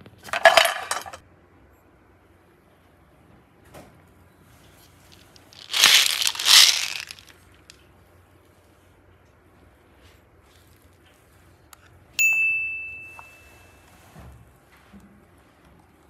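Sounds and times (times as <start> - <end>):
crinkling crushing by hand: 5.1 - 7.4.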